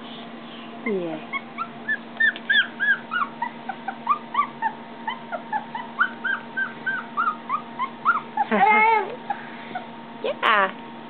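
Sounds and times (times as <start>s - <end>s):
puppy whimpering: 1.3s - 9.9s.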